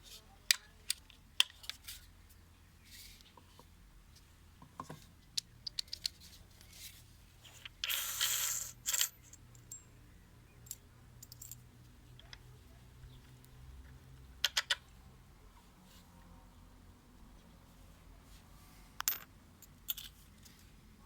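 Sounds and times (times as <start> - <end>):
hard parts clicking and clinking: 7.5 - 9.9, 10.6 - 11.6, 14.4 - 14.9, 19.0 - 20.6.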